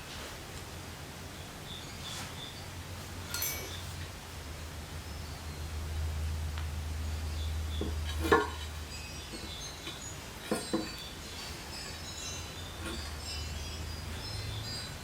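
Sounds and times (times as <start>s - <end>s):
low steady hum: 0.0s - 15.0s
metallic clinks and knocks: 3.2s - 4.0s, 7.7s - 15.0s.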